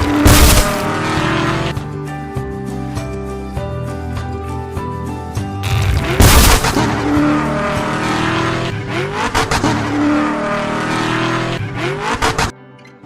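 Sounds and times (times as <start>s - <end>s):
car engine revving: 0.0s - 1.8s, 5.6s - 12.5s.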